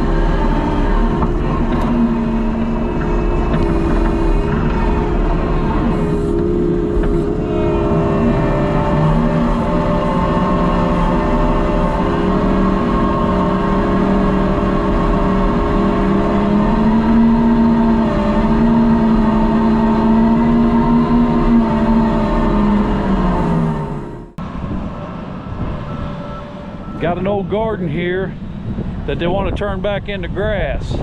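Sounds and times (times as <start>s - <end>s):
skid steer diesel engine and hydraulics: 0.0s - 31.0s.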